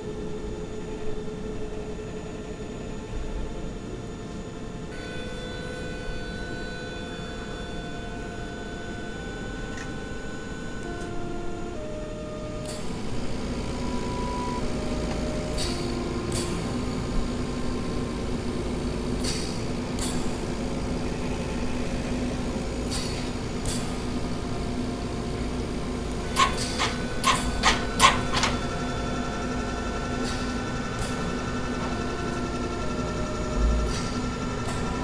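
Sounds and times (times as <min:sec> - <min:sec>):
low hum and rumble: 0:08.1 - 0:35.0.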